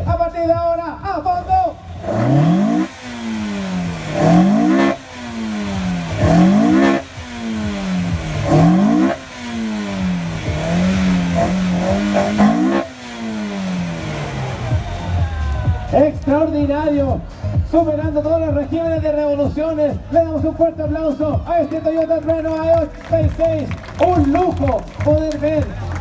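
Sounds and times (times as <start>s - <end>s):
car engine revving: 1.2s - 16.6s.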